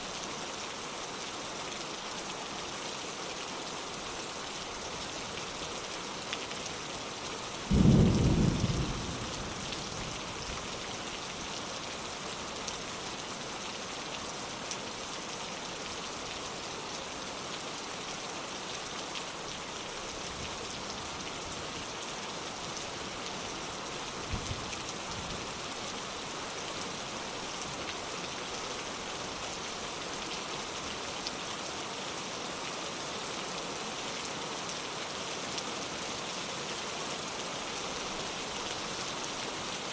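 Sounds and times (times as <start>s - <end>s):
steady rain: 0.0s - 39.9s
low rumble of thunder: 7.7s - 10.7s.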